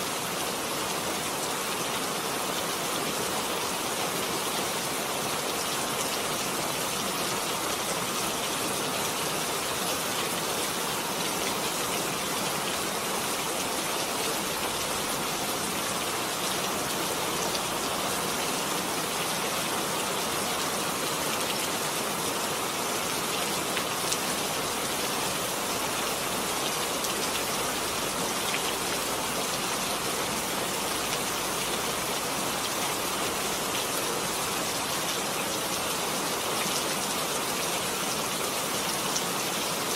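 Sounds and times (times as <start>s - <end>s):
rain pattering on surfaces: 23.2s - 39.9s.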